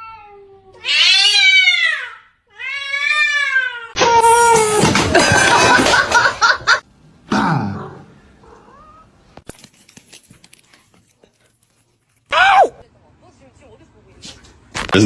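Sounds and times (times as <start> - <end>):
cat meowing loudly: 0.0 - 4.8.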